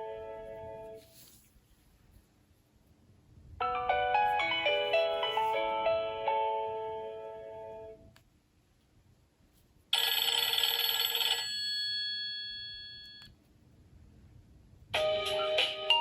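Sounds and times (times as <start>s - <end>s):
phone ringtone: 10.0s - 13.3s.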